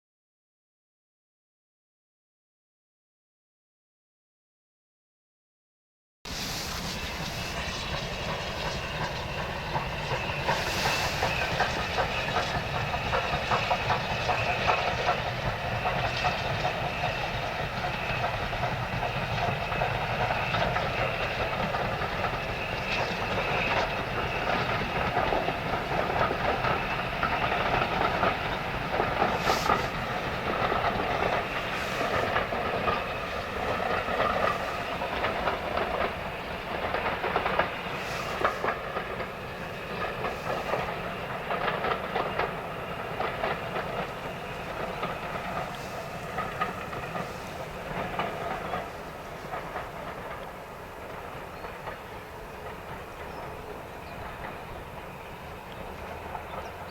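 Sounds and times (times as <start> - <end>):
train wheels clattering on rails: 6.3 - 56.9.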